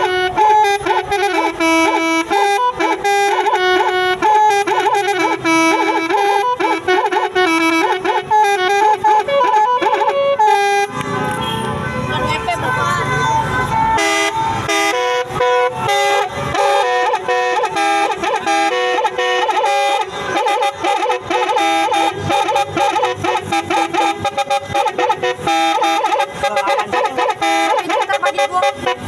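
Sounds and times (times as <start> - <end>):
multi-tone bus horn tune: 0.0 - 29.0.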